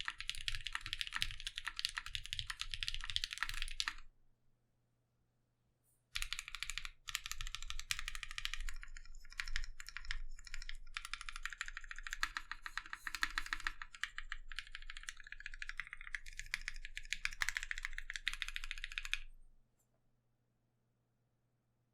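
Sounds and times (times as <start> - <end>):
typing on mechanical keyboard: 0.0 - 4.0, 6.2 - 19.3.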